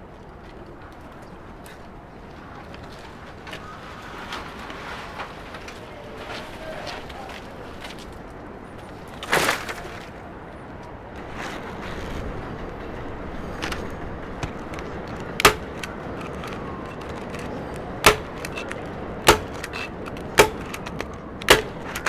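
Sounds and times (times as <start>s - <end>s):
steady rushing wind noise: 7.4s - 22.0s
sharp knocks: 18.0s - 20.8s, 21.5s - 22.0s.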